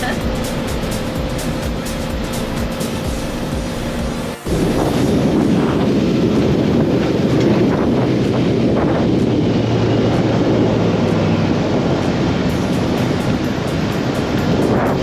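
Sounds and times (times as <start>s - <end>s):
boat engine hum: 0.0s - 15.0s
wind noise on microphone: 0.0s - 15.0s.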